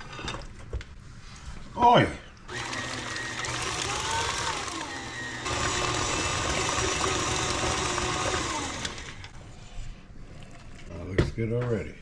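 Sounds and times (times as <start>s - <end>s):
electric mixer beating cream cheese: 2.5s - 9.3s.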